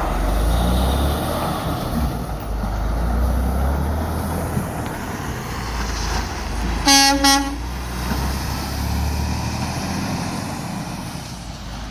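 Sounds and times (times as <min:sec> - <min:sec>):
truck horn toots: 0:06.8 - 0:07.9.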